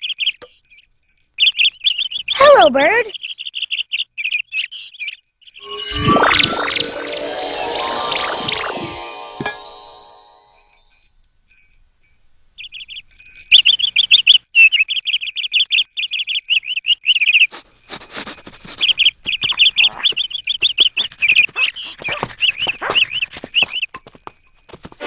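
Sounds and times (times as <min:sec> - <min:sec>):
cartoon bird chirps and twitters: 0:05.6 - 0:10.6.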